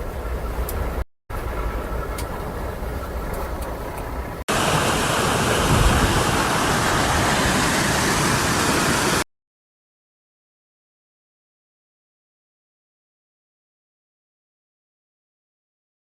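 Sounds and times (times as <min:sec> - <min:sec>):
rushing floodwater roar: 0:00.0 - 0:09.2.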